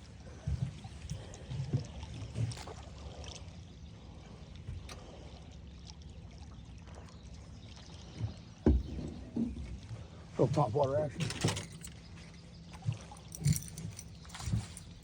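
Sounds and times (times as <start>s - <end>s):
low steady rumble: 0.0s - 15.0s
water lapping against boat hull: 0.0s - 15.0s
soft knocks: 8.6s - 9.9s.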